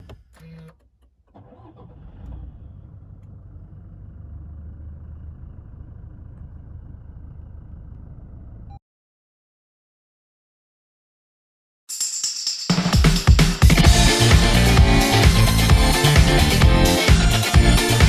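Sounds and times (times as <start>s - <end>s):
diesel engine starting and idling: 0.0s - 8.8s, 13.8s - 18.0s.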